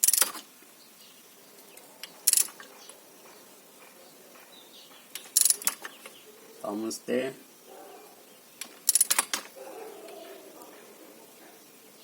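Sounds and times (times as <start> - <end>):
torque wrench ratcheting: 0.0 - 0.4, 2.3 - 2.6, 5.2 - 5.9, 8.6 - 9.5.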